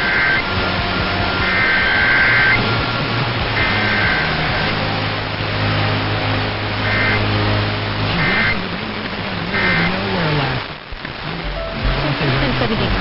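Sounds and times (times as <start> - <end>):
digital data tone bursts: 0.0 - 4.8, 6.8 - 7.4
low hum: 0.0 - 13.0.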